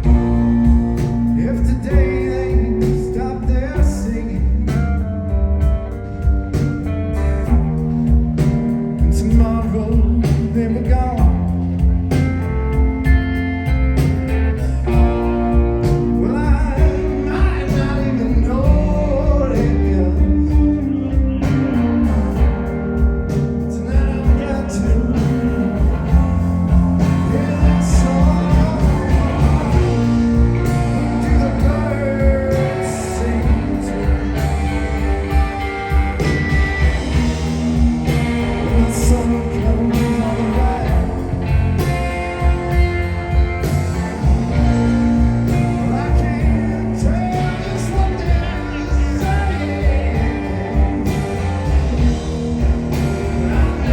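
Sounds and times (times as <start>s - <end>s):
live band playing: 0.0s - 53.9s
person singing: 14.6s - 22.5s, 23.3s - 37.4s, 38.1s - 53.9s.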